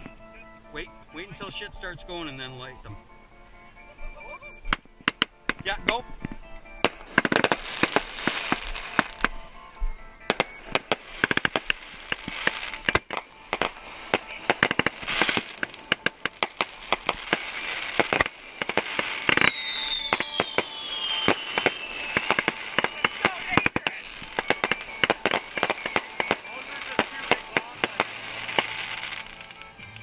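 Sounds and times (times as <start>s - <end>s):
firework bangs and crackling: 4.7s - 9.5s, 10.2s - 30.0s
whistling firework: 6.8s - 9.4s, 10.2s - 30.0s.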